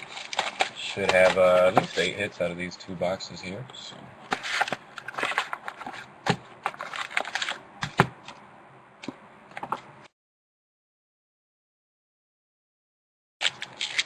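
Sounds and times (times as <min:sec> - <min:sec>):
card packaging crinkling: 0:00.0 - 0:02.1, 0:04.3 - 0:07.6, 0:13.4 - 0:14.0.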